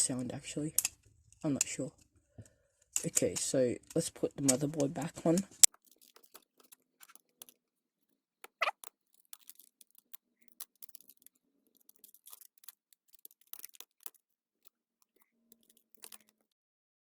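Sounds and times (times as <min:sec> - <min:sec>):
phone parts clicking: 0:05.6 - 0:07.6, 0:08.4 - 0:16.6.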